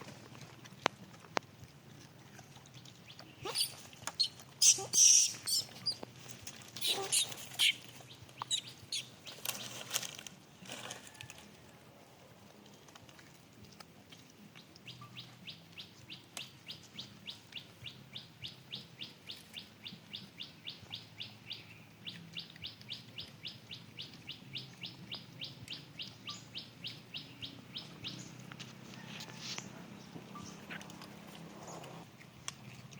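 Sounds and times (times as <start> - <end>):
bird chirping: 3.1 - 6.0, 6.8 - 9.8, 14.8 - 28.4, 29.6 - 30.9.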